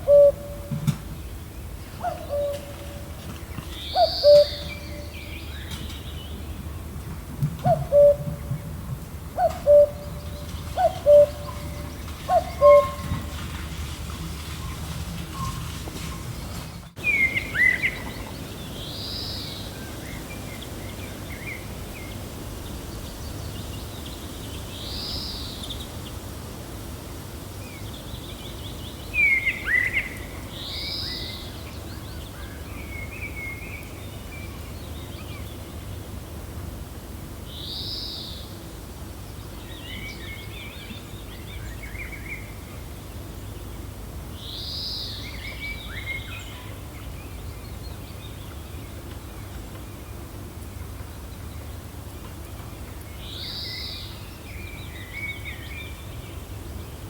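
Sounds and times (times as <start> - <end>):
birds twittering: 0.0 - 7.0, 7.6 - 26.2, 37.6 - 57.0
gentle wind: 0.0 - 57.0
bird high arched call: 3.9 - 5.1, 10.8 - 13.1.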